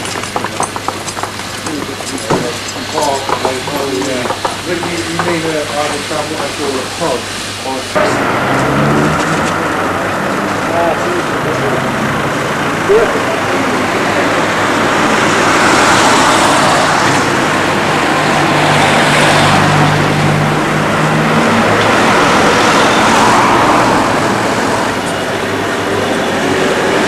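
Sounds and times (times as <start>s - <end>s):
train rumbling: 0.0s - 27.0s.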